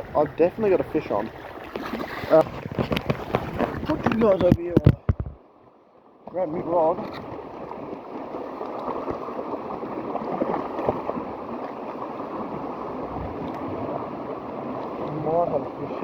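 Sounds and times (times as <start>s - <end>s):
waves washing on shore: 0.0s - 5.1s, 6.3s - 16.0s
wind: 0.0s - 16.0s
faint small knocks: 2.6s - 5.4s.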